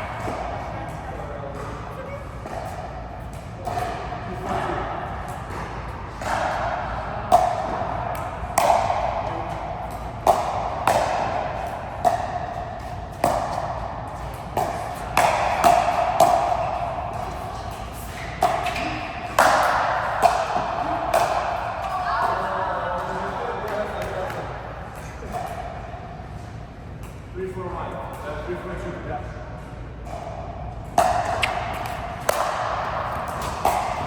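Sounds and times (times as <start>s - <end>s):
ball struck by rackets: 0.1s - 22.0s, 30.1s - 34.0s.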